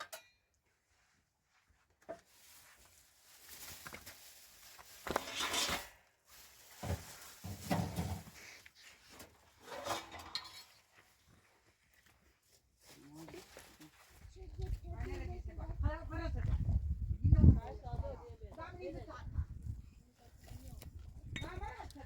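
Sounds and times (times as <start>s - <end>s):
dishes and utensils clattering: 9.6s - 10.8s.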